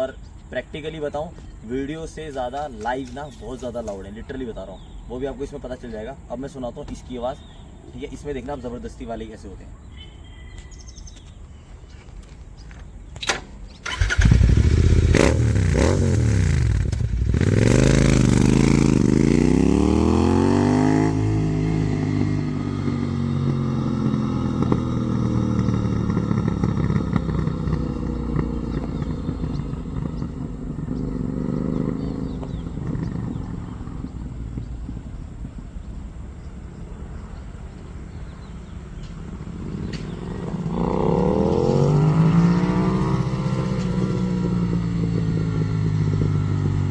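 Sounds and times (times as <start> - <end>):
sharp exhaust cracks: 13.2 - 46.9
motorcycle engine revving: 13.8 - 46.9.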